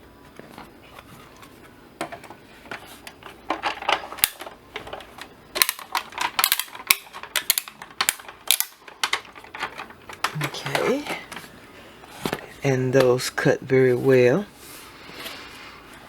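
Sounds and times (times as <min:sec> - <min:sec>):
die-cutting machine clicking and crackling: 0:03.7 - 0:11.0.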